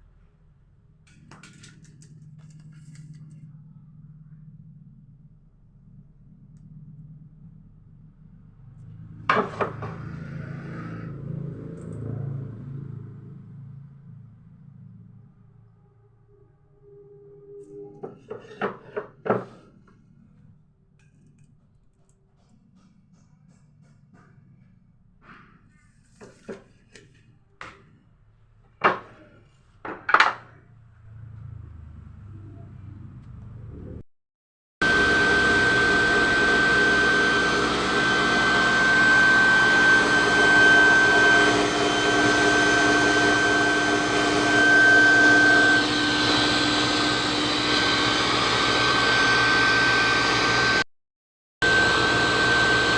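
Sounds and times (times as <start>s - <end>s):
low hum: 2.4s - 18.1s
electric motor hum: 34.8s - 50.8s, 51.6s - 52.9s.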